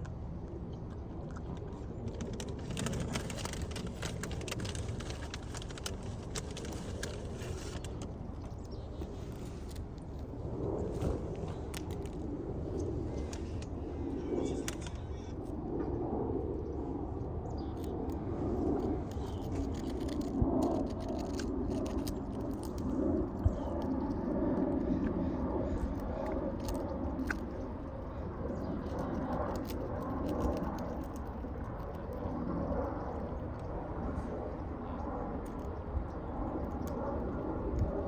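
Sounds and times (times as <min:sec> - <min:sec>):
chip bag crackling: 0:02.3 - 0:08.0.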